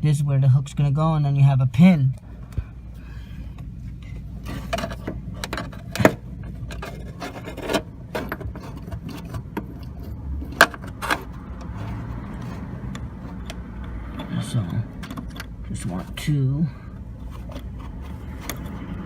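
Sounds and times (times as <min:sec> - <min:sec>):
small metal parts clicking: 0:04.6 - 0:15.6.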